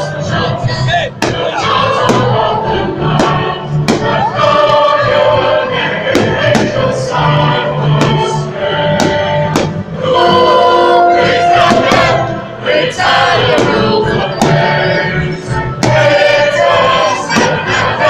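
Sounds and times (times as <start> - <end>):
choir-like singing: 0.0 - 18.0
sharp hits: 11.1 - 12.4.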